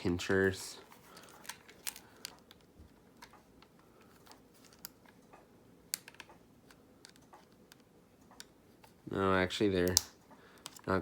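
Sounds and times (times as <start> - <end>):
plastic clips clicking: 1.1 - 5.3, 5.9 - 8.6, 9.8 - 10.9.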